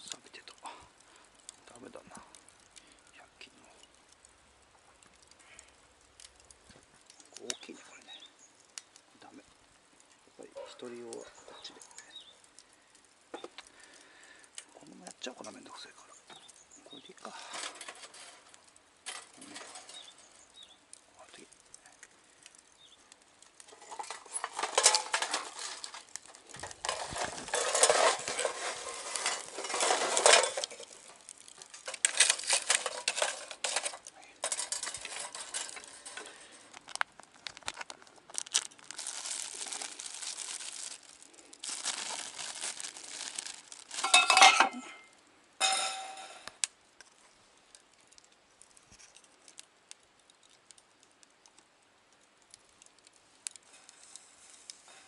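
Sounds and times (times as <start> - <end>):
plastic packaging crinkling: 23.6 - 45.1
utensils and dishes clinking: 26.9 - 31.0, 44.0 - 45.0, 45.6 - 46.4.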